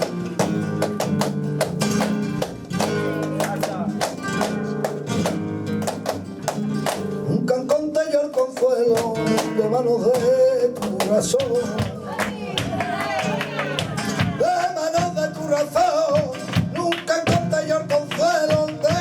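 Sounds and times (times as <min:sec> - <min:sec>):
percussive guitar strikes: 0:00.0 - 0:07.3
flamenco guitar: 0:00.0 - 0:19.0.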